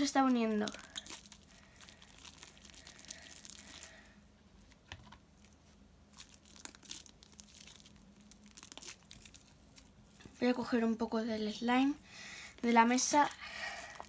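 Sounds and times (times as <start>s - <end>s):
slime crackling and clicking: 6.2s - 9.9s.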